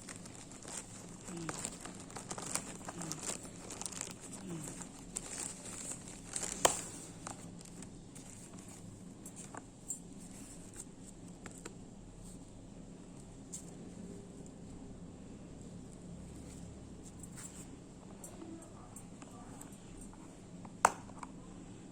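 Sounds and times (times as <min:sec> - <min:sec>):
packaging crinkling and tearing: 0:00.0 - 0:09.6.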